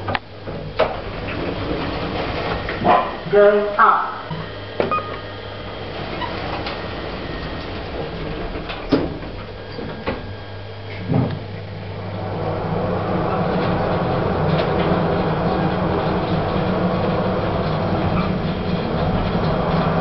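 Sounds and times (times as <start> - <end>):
lift car rumbling hum: 0.0 - 20.0
lift car thump: 4.3 - 11.6.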